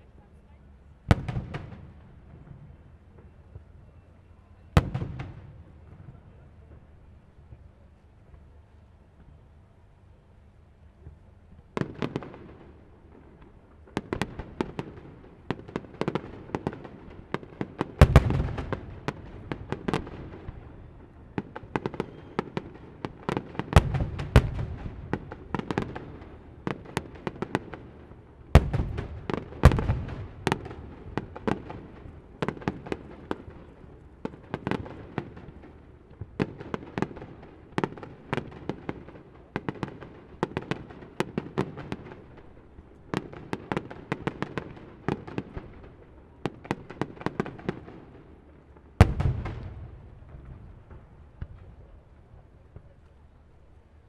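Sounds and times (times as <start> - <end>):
firework bangs and crackling: 1.0 - 8.4, 11.0 - 53.6
deep firework booms: 18.0 - 20.6, 28.6 - 32.8, 49.0 - 51.8.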